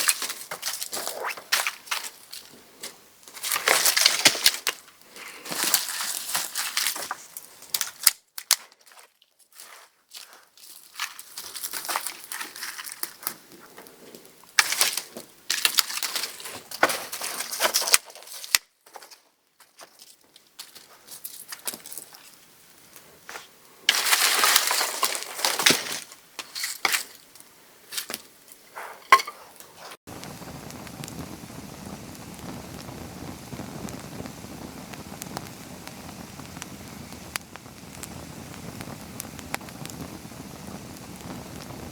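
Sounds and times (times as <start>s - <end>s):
kindling fire crackling and popping: 0.0s - 8.6s, 11.2s - 18.6s, 20.6s - 27.0s, 30.0s - 41.9s
rustling: 8.7s - 30.0s
steady hiss: 29.7s - 41.9s.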